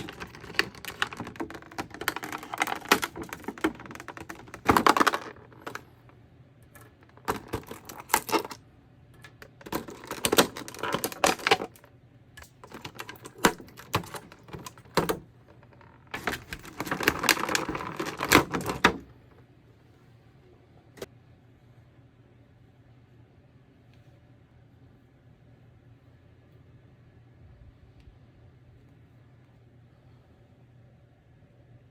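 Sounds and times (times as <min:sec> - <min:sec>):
packaging crackling and rustling: 0:00.0 - 0:06.0, 0:06.8 - 0:08.6, 0:09.2 - 0:19.2.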